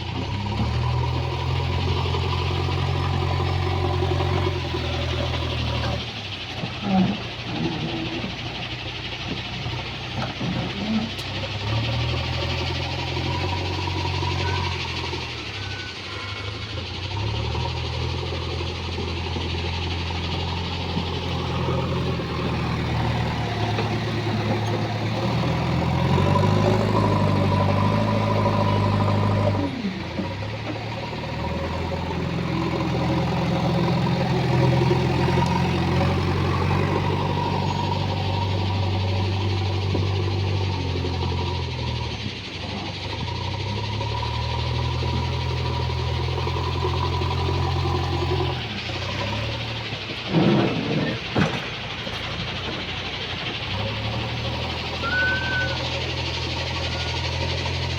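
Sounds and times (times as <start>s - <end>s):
diesel engine revving: 0.0s - 57.9s.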